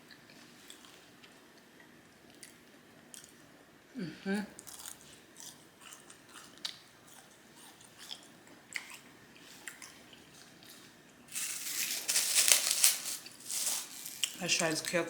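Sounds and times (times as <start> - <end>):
close chewing: 0.0 - 3.5, 4.6 - 12.6
food packaging crinkling: 8.8 - 15.0.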